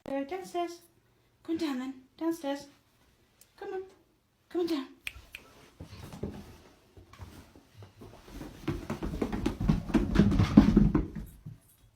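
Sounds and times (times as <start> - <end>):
dog paws on stairs: 5.5 - 11.9.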